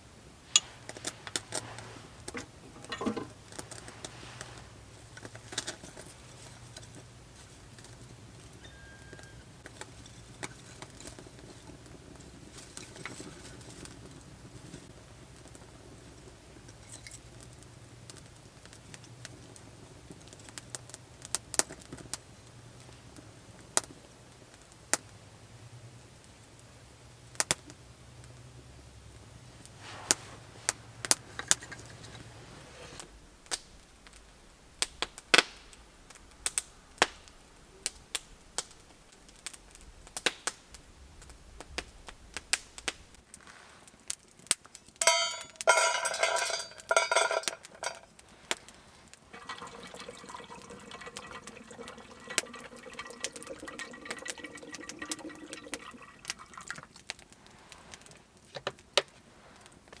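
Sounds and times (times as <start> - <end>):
utensils clicking and knocking: 2.3 - 3.3, 45.0 - 48.0
liquid pouring with splashing: 49.3 - 57.0.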